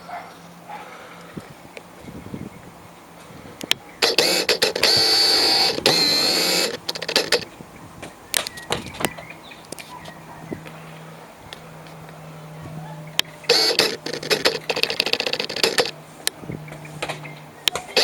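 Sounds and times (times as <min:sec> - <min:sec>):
lens autofocus motor whirring: 0:04.0 - 0:07.5, 0:13.4 - 0:16.4
sharp camera clicks: 0:04.0 - 0:07.5, 0:13.2 - 0:16.4.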